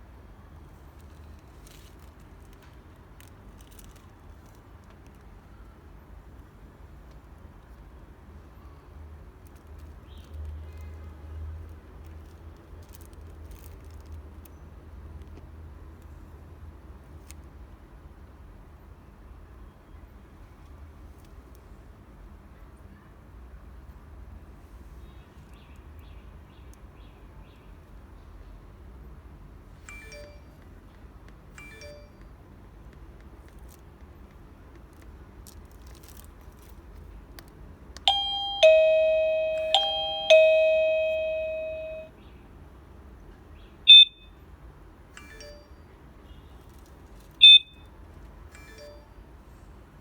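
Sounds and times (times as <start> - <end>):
short sharp high beeps: 29.9 - 30.4, 38.1 - 42.1, 43.9 - 44.2
two-tone doorbell chime: 29.9 - 30.6, 31.6 - 32.2, 38.1 - 42.1, 45.2 - 45.8.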